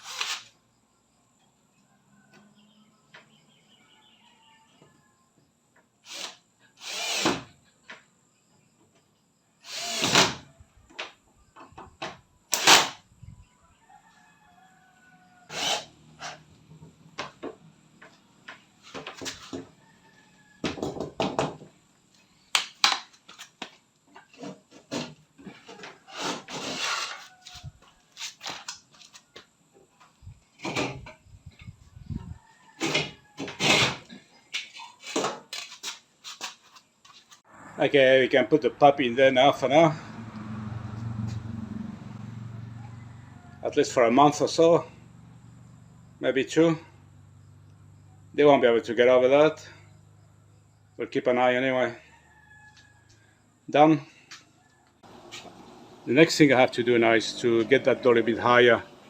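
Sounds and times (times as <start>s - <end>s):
tools knocking and clattering: 20.6s - 21.7s
short scraping bursts: 26.0s - 28.6s.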